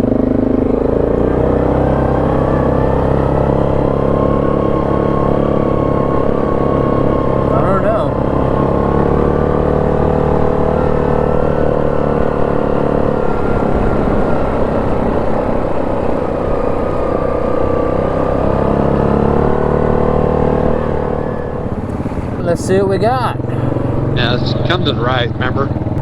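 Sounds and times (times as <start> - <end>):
atv engine running: 0.0 - 26.0.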